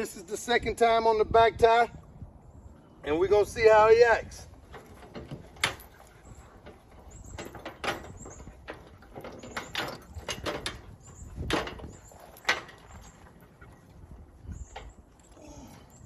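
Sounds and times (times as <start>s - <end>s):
knocks rattles and scuffs: 4.5s - 15.3s.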